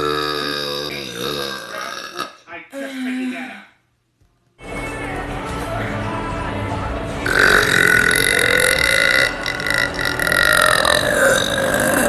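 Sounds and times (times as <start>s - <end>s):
person belching: 0.0s - 3.0s, 7.2s - 12.0s.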